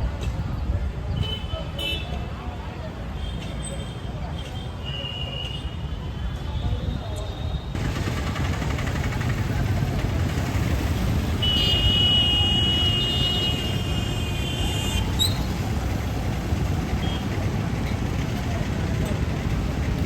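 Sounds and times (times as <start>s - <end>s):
road traffic rumble: 0.0s - 20.0s.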